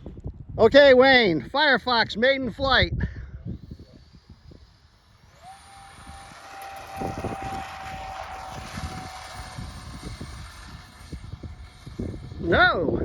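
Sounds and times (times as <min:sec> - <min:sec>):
rushing air: 0:03.4 - 0:13.0
electric ducted fans whining: 0:03.5 - 0:13.0.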